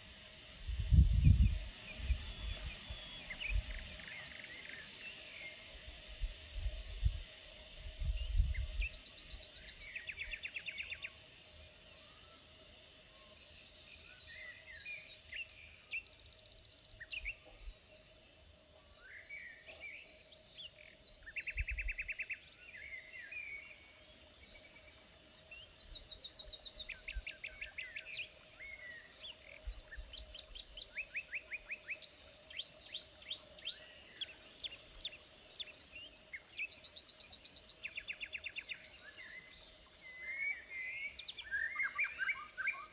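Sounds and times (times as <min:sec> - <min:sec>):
wind rumbles: 0:00.7 - 0:02.7
birds singing and chirping: 0:13.4 - 0:42.9.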